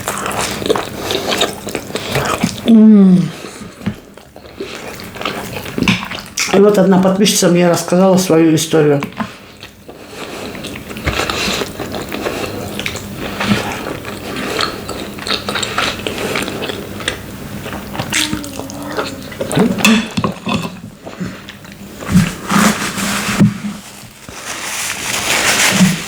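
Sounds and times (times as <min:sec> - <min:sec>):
wet chewing: 0:00.0 - 0:02.7, 0:03.4 - 0:06.6, 0:09.0 - 0:22.1
mouth clicks: 0:18.0 - 0:20.0.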